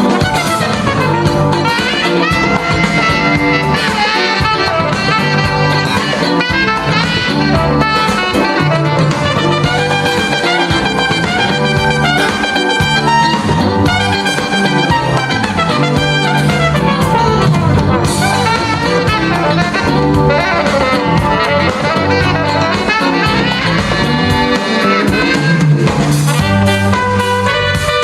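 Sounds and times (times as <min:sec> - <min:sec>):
brass horn line: 0:00.0 - 0:28.0
jazz band over loudspeakers: 0:00.0 - 0:28.0.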